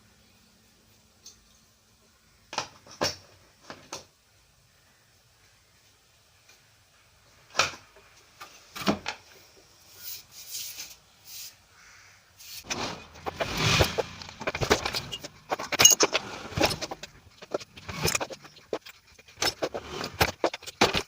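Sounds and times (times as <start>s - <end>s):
small hard objects clattering: 12.6s - 21.0s.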